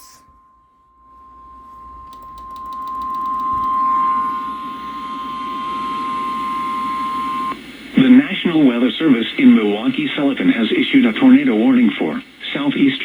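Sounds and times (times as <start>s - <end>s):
radio hum and hiss: 3.4s - 13.0s.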